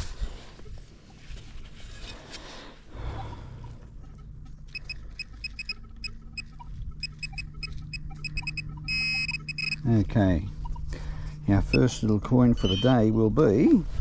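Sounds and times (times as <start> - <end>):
pinpointer beeping: 4.7 - 10.9, 11.6 - 12.0.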